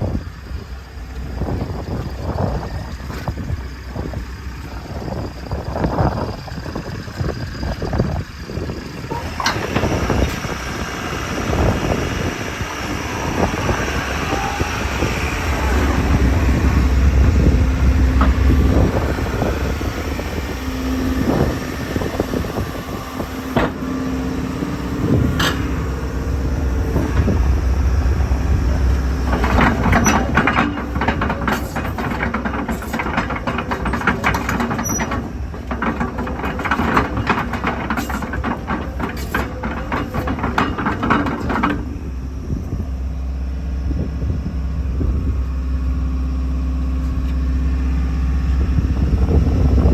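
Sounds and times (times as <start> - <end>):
excavator diesel engine droning: 0.0 - 49.9
metallic clanks and knocks: 15.1 - 22.6, 23.5 - 42.2.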